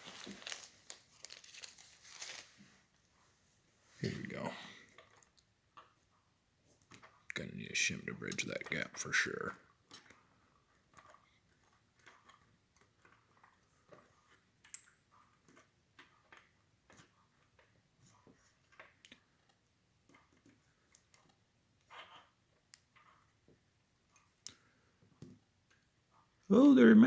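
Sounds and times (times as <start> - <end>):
small metal clicks and taps: 10.9 - 17.7.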